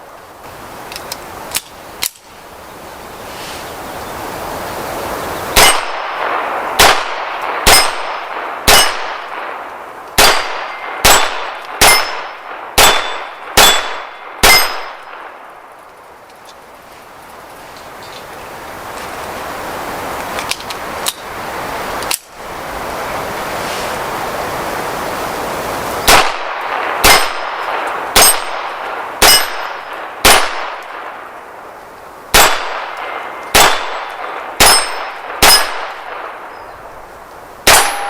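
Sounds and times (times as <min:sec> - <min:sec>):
pistol shots: 0:05.6 - 0:09.6, 0:10.2 - 0:15.4, 0:26.1 - 0:31.2, 0:32.3 - 0:36.4, 0:37.6 - 0:38.0.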